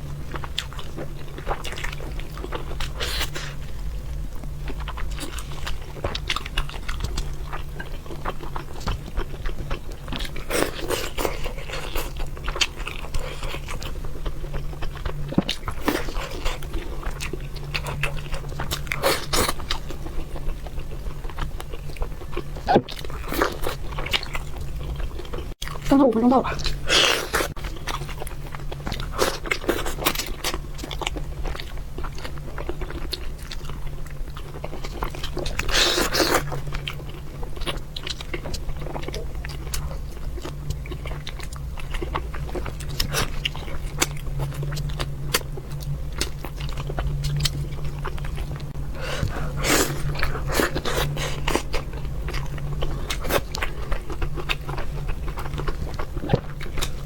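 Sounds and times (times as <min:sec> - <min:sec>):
steady low hum: 0:00.0 - 0:57.0
person chewing crunchy fish: 0:00.1 - 0:57.0.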